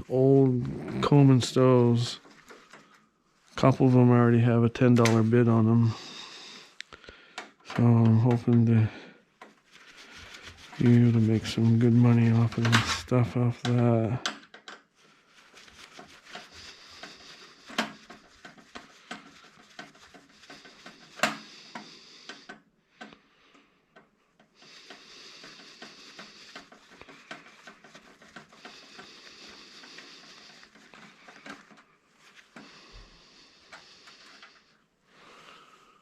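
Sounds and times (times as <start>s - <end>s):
clicks and clatter of parts: 13.6s - 14.9s.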